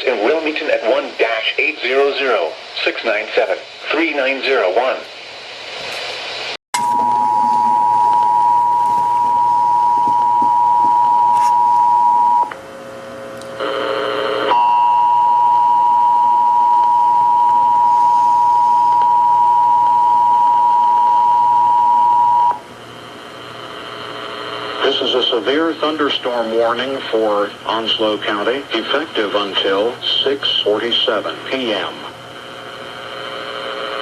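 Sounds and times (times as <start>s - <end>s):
two-tone alert signal: 6.8s - 12.5s.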